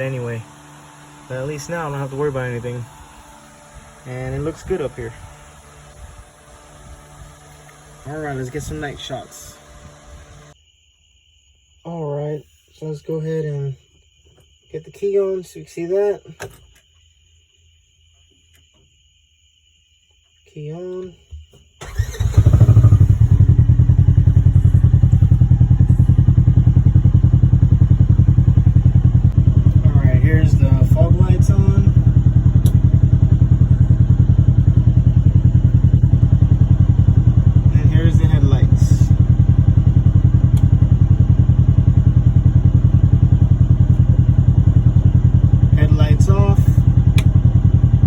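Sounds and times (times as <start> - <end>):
engine idling: 0.0 - 10.6, 21.8 - 48.0
utility vehicle engine cranking: 0.0 - 10.6, 21.8 - 48.0.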